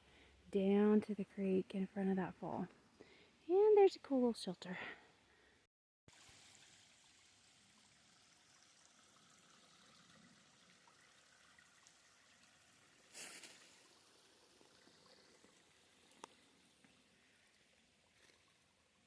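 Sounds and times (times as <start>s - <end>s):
flowing creek water: 6.1s - 19.0s.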